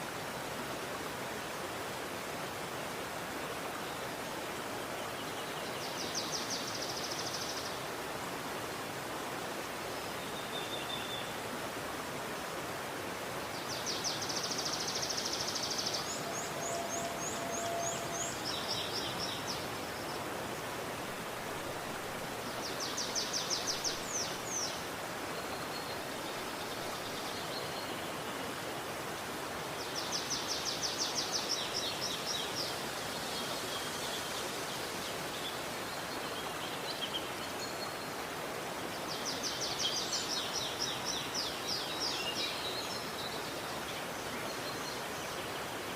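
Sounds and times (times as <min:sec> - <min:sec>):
river flowing: 0:00.0 - 0:45.9
songbird trilling: 0:16.0 - 0:19.4.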